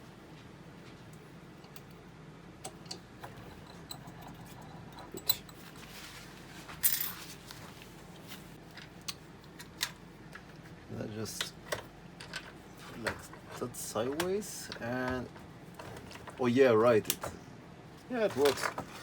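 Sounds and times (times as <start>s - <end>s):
small metal parts clinking: 6.8s - 7.3s.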